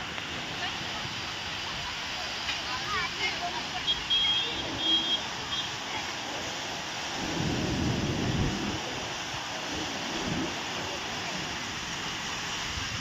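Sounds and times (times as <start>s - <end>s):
heavy rain hiss: 0.0s - 13.0s.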